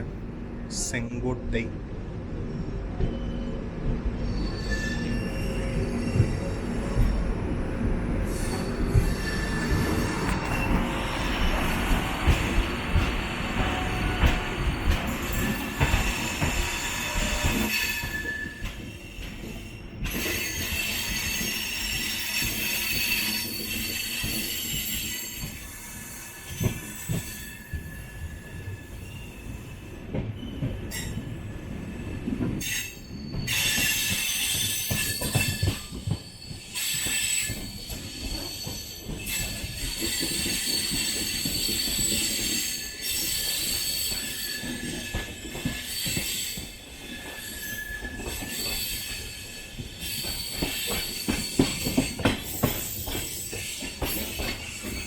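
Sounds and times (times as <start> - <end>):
train wheels rumbling on rails: 0.0 - 55.0
high-pitched wheel squeal: 4.2 - 6.4, 45.8 - 52.2.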